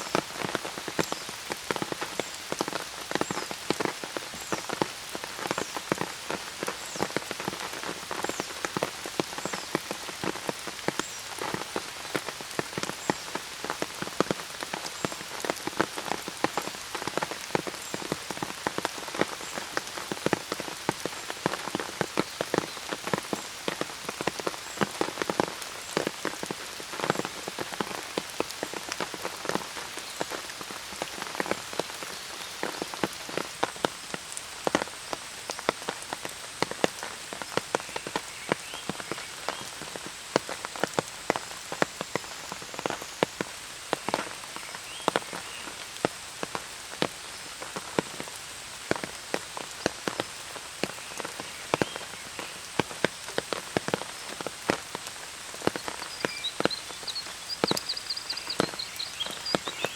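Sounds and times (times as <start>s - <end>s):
rain drops tapping: 0.0s - 59.9s
rainfall hiss: 0.0s - 59.9s.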